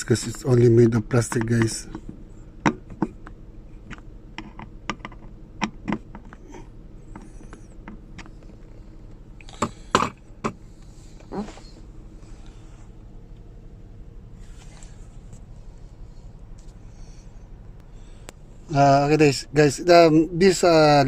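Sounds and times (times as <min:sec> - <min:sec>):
plastic parts clicking and knocking: 0:01.2 - 0:08.3.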